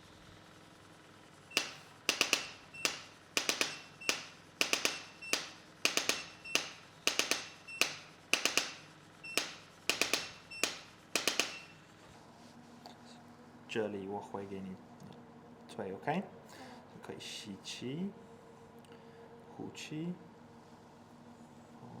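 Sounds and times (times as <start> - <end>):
adjusting instrument clicks: 1.5 - 11.8.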